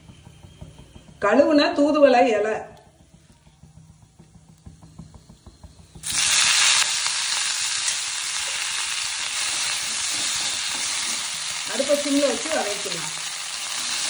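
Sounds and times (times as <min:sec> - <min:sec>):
spices crackling in hot oil: 0:06.0 - 0:14.0
wet leaves sizzling in oil: 0:06.0 - 0:14.0.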